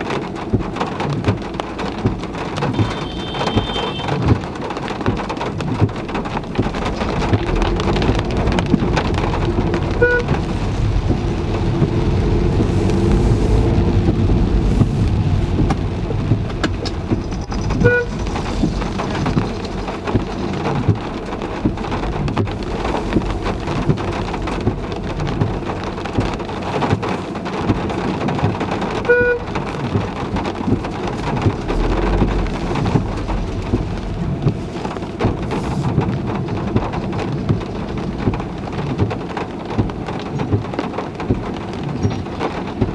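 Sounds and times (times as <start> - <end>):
heavy rain hitting a car: 0.0 - 42.9
car horn toot: 2.6 - 4.4, 9.9 - 10.4, 17.8 - 18.2, 29.1 - 29.5.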